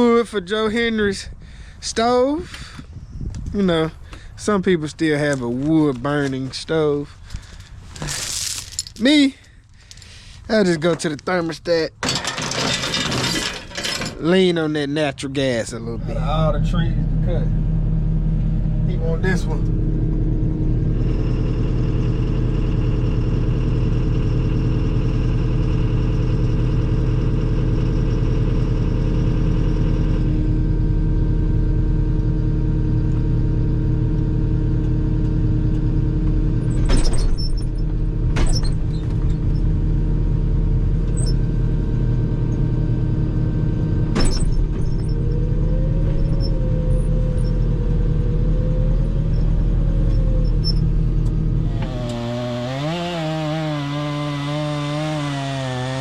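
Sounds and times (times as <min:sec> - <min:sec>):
engine running with low rumble: 0:00.0 - 0:56.0
wavering whine: 0:15.0 - 0:51.8.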